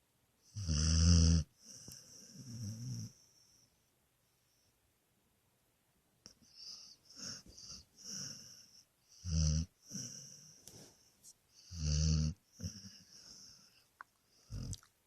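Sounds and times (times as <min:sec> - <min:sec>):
dog snoring: 0:00.5 - 0:03.3, 0:06.5 - 0:10.6, 0:11.6 - 0:13.8, 0:14.4 - 0:14.9.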